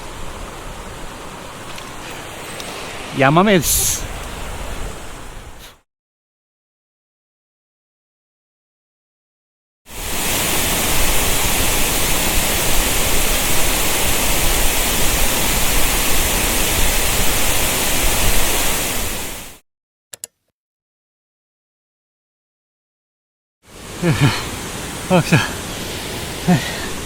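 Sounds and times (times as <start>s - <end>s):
rushing stream water: 0.0s - 5.8s, 9.9s - 19.6s, 23.7s - 27.0s.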